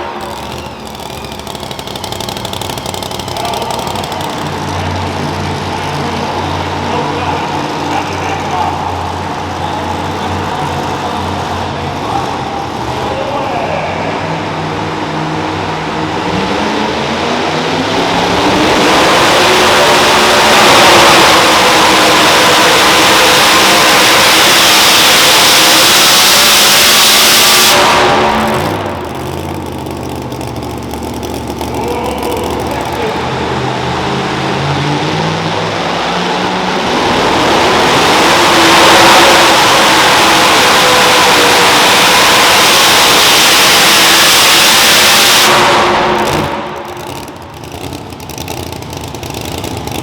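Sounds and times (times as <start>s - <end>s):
truck engine running at high revs: 0.0s - 50.0s.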